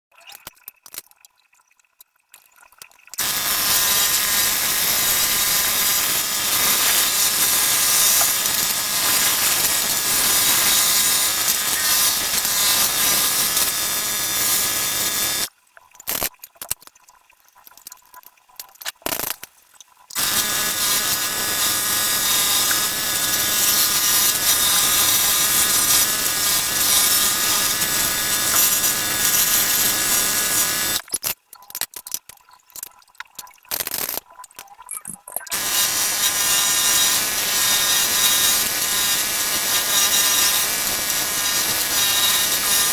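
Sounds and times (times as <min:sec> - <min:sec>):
electric power tool whining: 0:03.2 - 0:15.5, 0:20.2 - 0:31.1, 0:35.5 - 0:42.9.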